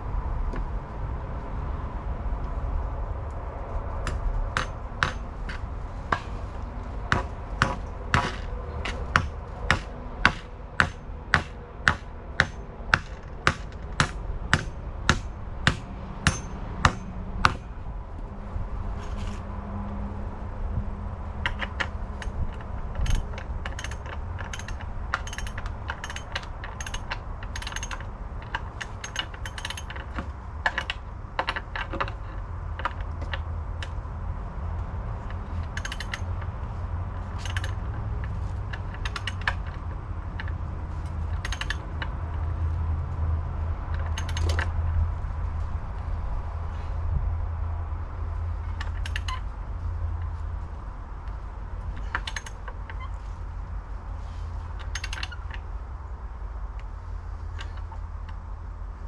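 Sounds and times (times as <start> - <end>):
low steady rumble: 0.0 - 59.0
hand tools clicking and tapping: 4.0 - 17.7, 21.4 - 34.0, 35.2 - 42.5, 43.9 - 44.7, 48.7 - 49.4, 51.2 - 53.1, 54.8 - 55.6.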